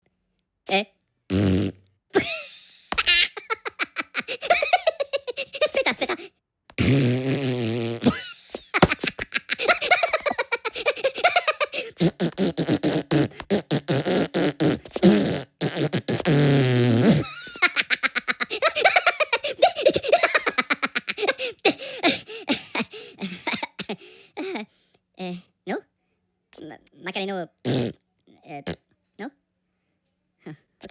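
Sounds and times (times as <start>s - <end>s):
cartoon voices blowing raspberries: 6.8s - 8.2s, 10.2s - 17.3s.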